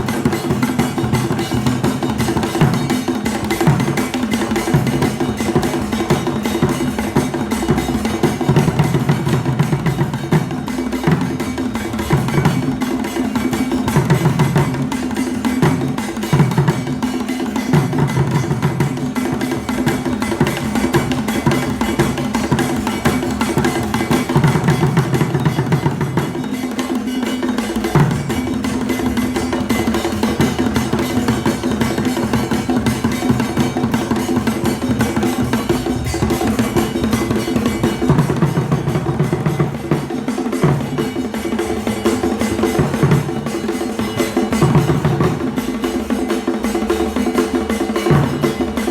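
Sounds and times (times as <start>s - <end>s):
bell-like timeline beat: 0.0s - 48.9s
drum ensemble playing: 0.0s - 48.9s.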